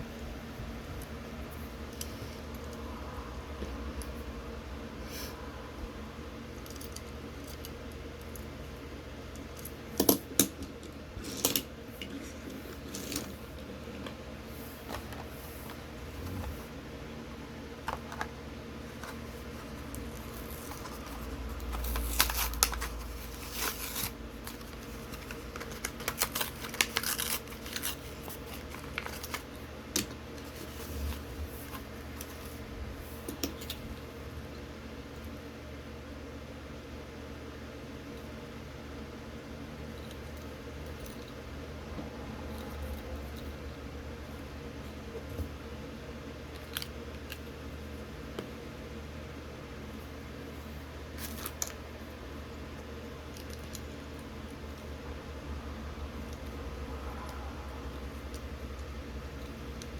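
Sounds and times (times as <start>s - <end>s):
steady low hum: 0.0s - 59.9s
plastic and cardboard crinkling: 18.9s - 32.6s.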